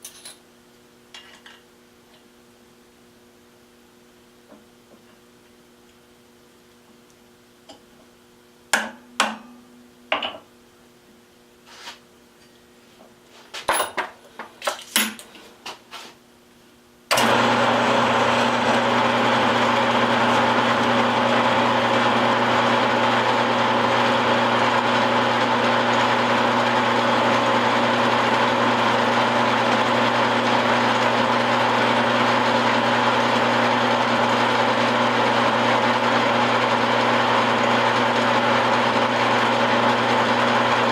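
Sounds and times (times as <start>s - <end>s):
milling machine whirring: 17.1s - 40.9s.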